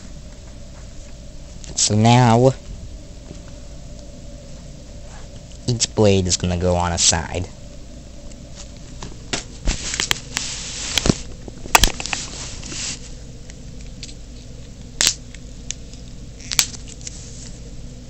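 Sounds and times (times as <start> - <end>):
paper rustling and crinkling: 8.6 - 13.2, 15.9 - 17.6.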